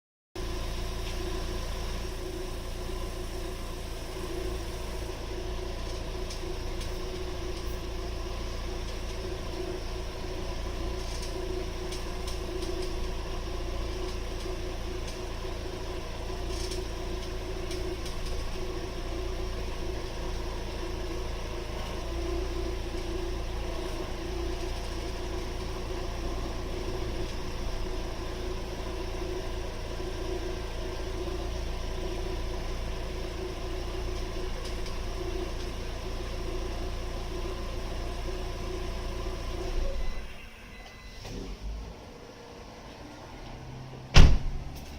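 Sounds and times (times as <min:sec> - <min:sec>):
car running: 0:00.4 - 0:44.9
faint suspension clicks: 0:10.5 - 0:15.6, 0:16.3 - 0:18.8.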